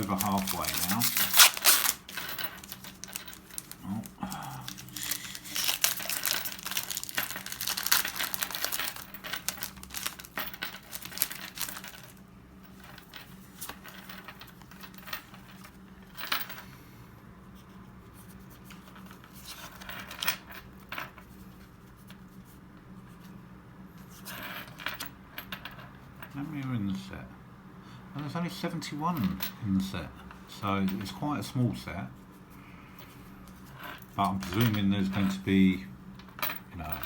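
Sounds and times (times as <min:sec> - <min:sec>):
foil wrapper crinkling and tearing: 0:00.0 - 0:12.1
cards rustling: 0:00.0 - 0:12.2.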